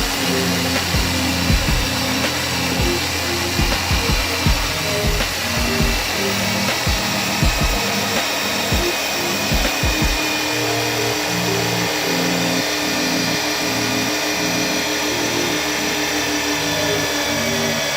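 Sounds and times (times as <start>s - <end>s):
low thumping beat: 0.0s - 10.5s
background music: 0.0s - 17.9s
power tool running: 0.0s - 17.9s.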